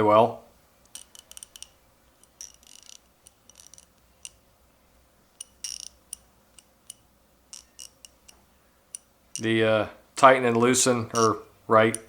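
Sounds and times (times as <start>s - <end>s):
ratchet clicking: 0.9s - 4.4s, 5.3s - 9.5s, 11.2s - 12.0s.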